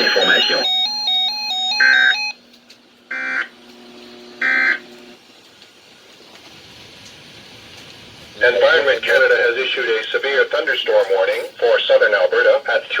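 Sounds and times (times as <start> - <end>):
buzzing alert data bursts: 0.0 - 2.4, 3.1 - 5.2.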